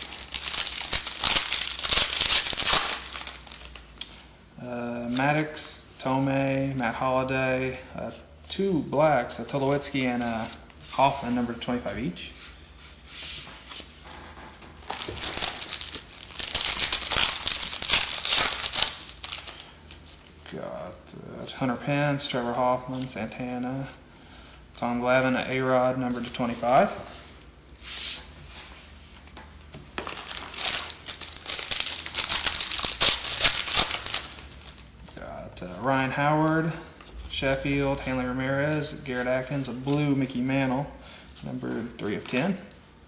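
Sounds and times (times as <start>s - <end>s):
wrapper tearing and crinkling: 0.0s - 4.0s, 14.8s - 20.4s, 30.0s - 34.9s.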